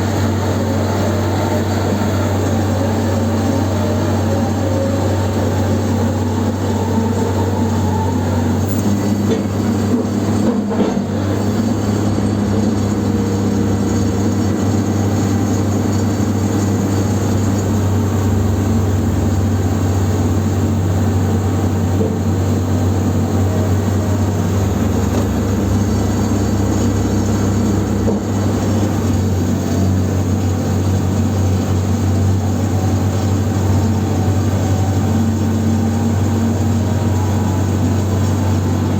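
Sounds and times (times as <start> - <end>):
heavy machine engine humming: 0.0 - 38.9.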